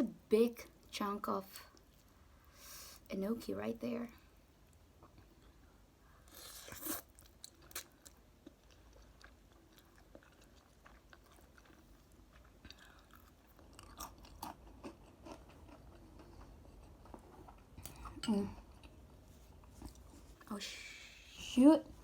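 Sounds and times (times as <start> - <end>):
chewing with wet smacks: 6.4 - 19.0.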